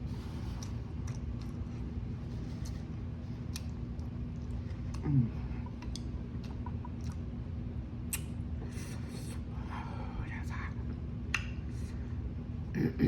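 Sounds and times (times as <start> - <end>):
person chewing noodles: 0.1 - 5.0, 5.6 - 7.3.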